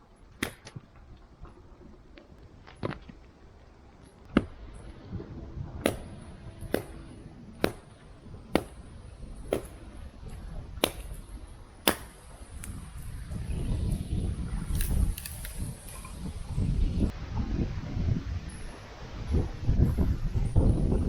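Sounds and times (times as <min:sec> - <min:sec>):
hand tool striking metal: 0:05.9 - 0:07.0, 0:07.6 - 0:07.9, 0:08.5 - 0:08.8, 0:09.5 - 0:09.8, 0:10.8 - 0:11.2, 0:11.9 - 0:12.1.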